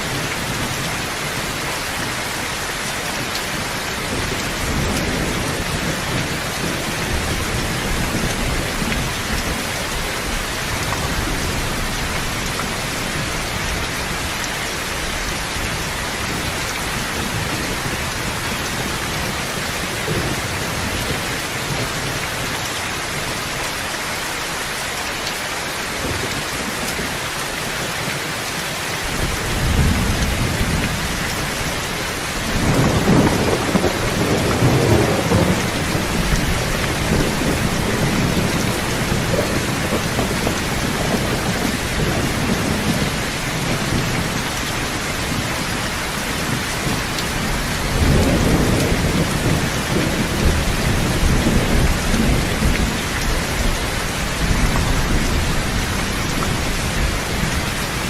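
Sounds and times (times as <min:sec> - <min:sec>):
steady rain: 0:00.0 - 0:58.0
rolling thunder: 0:29.1 - 0:57.8.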